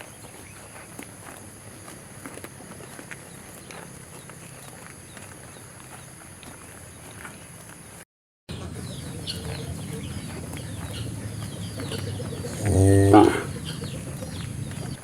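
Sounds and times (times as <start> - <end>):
birds chirping: 2.8 - 15.0
cow mooing: 9.5 - 15.0.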